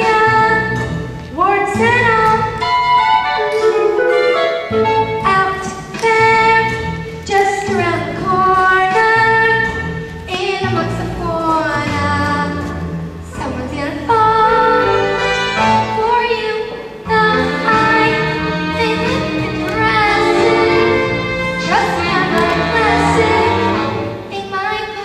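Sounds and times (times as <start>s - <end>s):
instrumental accompaniment: 0.0s - 25.0s
voices singing held notes: 14.2s - 24.2s.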